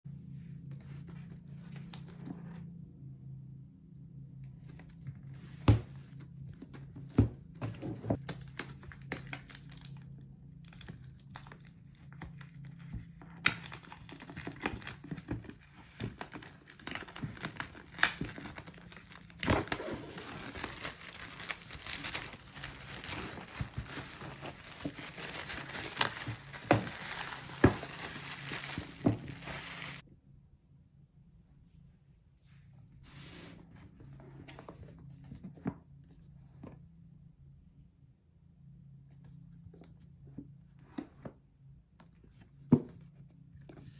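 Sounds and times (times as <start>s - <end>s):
packaging crinkling and rustling: 6.1s - 30.0s
packaging tearing: 16.2s - 30.0s.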